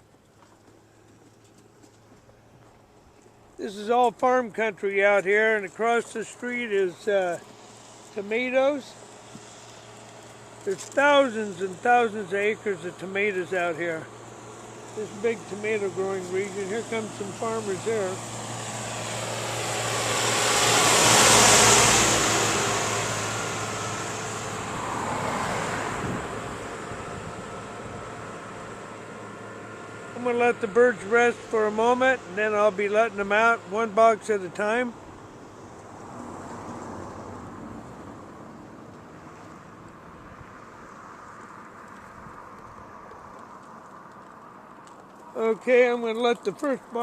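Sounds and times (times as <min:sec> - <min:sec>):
vehicle passing by: 0:03.6 - 0:47.0
wind on microphone: 0:25.9 - 0:28.1.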